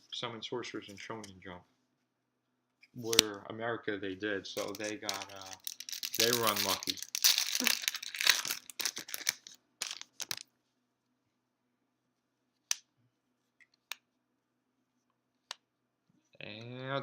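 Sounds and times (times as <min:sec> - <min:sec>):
foil wrapper crinkling and tearing: 0:04.6 - 0:10.4.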